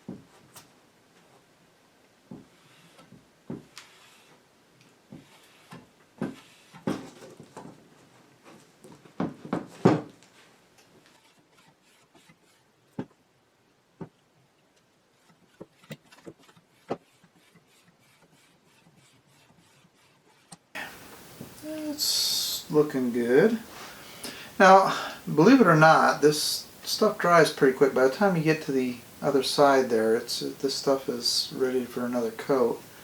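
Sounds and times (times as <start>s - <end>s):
pad scrubbing on wood: 11.0s - 12.7s, 15.2s - 20.7s.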